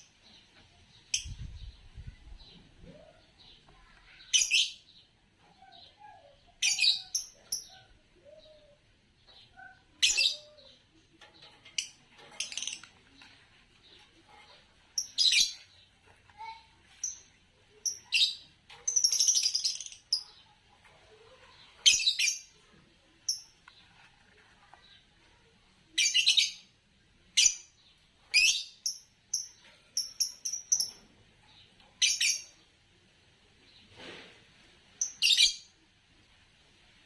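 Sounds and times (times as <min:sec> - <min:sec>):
lovebirds chirping: 0:00.0 - 0:32.7, 0:35.0 - 0:35.7.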